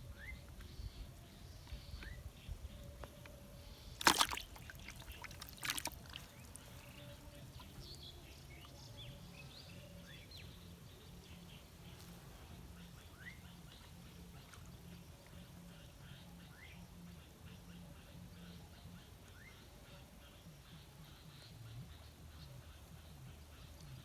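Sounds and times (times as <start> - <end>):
low steady background noise: 0.0 - 24.0
water splashes: 3.9 - 7.9.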